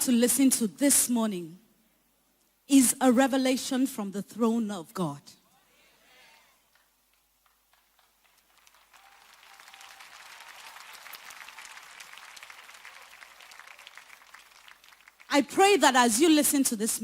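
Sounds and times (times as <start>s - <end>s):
congregation applauding: 6.6s - 15.4s.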